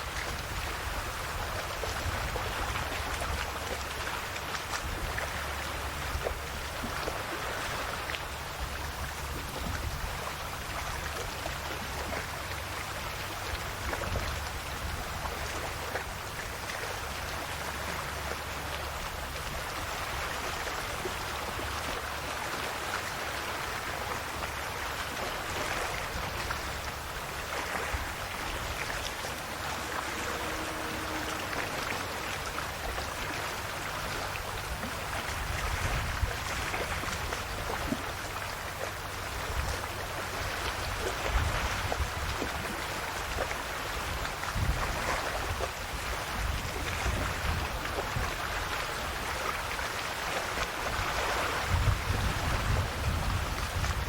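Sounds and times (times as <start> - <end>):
sea waves lapping on shore: 0.0 - 54.0.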